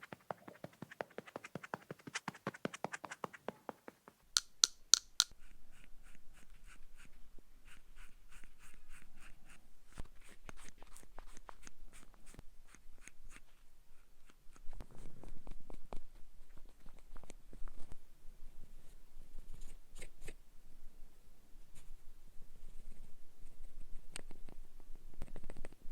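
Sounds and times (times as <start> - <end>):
soft brushing strokes: 0.0 - 4.2
rapid light tapping: 0.0 - 5.3
sharp clicks: 4.4 - 5.3.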